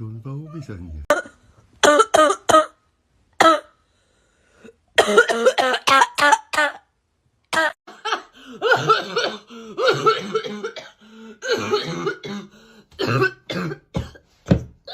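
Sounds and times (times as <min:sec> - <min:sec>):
person coughing: 0:01.1 - 0:02.8, 0:03.4 - 0:03.7, 0:05.0 - 0:06.8, 0:07.6 - 0:14.3.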